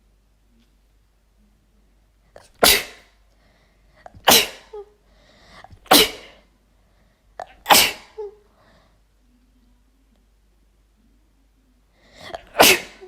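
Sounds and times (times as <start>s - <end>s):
woman sneezing: 2.4s - 3.1s, 4.2s - 4.9s, 5.8s - 6.4s, 7.4s - 8.4s, 12.2s - 13.0s.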